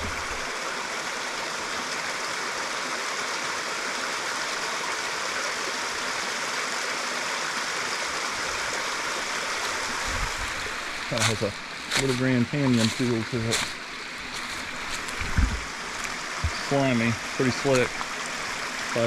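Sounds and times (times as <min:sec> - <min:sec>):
water rushing down waterfall: 0:00.0 - 0:19.0.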